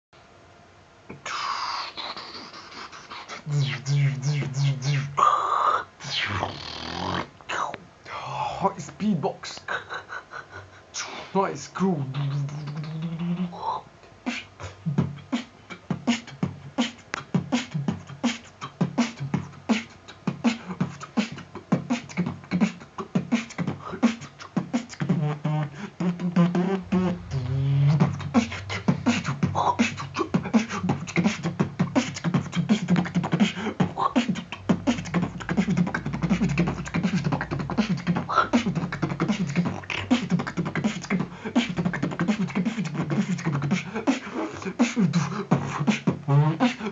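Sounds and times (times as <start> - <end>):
hummed pitched sounds: 1.1 - 7.3, 11.9 - 43.8
beatboxing: 1.1 - 46.9
low bass hum: 25.4 - 33.2, 34.6 - 42.0.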